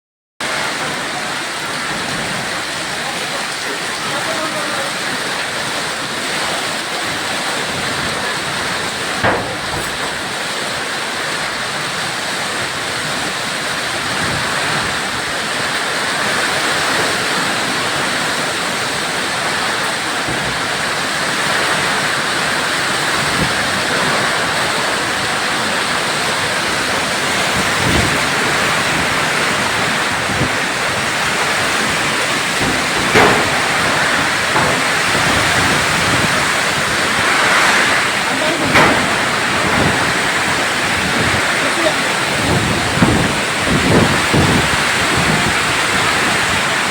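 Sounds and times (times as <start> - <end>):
hail and rain pelting down: 0.4 - 46.9
sharp hail knocks: 8.5 - 10.9, 19.8 - 22.7, 30.0 - 45.5.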